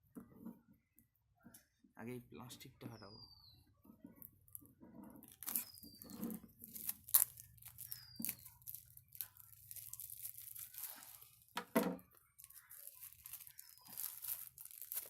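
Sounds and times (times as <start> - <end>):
plastic wrap crinkling and tearing: 5.2 - 15.0.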